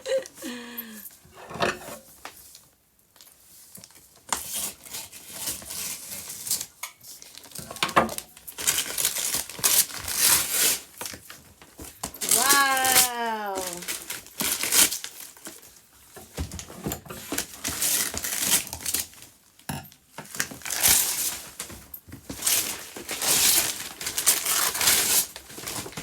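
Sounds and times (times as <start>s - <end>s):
gift packaging tearing and crinkling: 4.5s - 11.4s, 12.0s - 15.7s, 17.2s - 19.3s, 20.3s - 21.7s, 22.3s - 26.0s.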